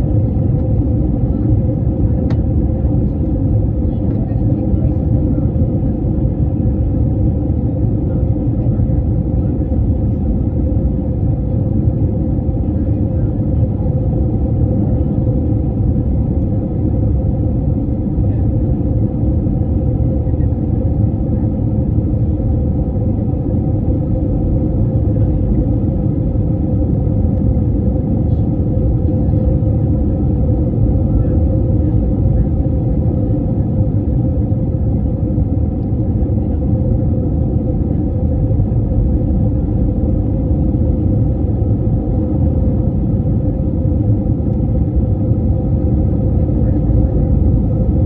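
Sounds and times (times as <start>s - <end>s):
jet airliner cabin drone: 0.0s - 48.0s.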